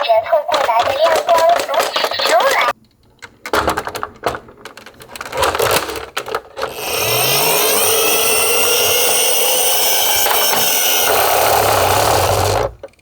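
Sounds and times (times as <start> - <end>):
light clicks and knocks of toy: 0.4 - 11.0
toy motor whir: 6.6 - 13.0.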